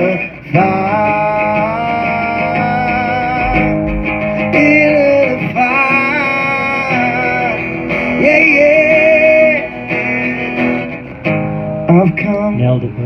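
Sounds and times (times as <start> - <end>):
acoustic guitar playing: 0.0 - 12.5.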